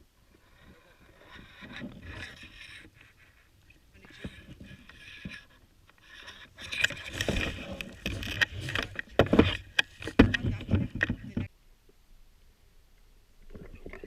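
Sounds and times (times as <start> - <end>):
scraping and rustling: 0.3 - 11.5
knocks and clicks: 6.8 - 11.5.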